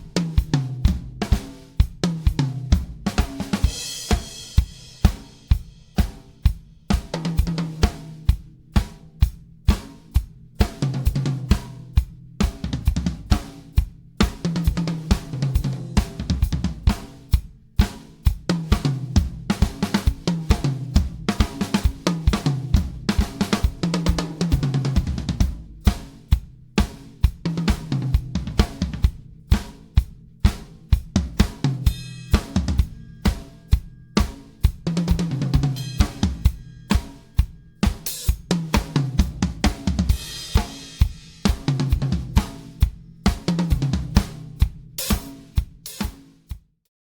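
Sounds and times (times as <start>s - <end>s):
snare drum: 0.0s - 46.7s
bass drum: 0.0s - 46.8s.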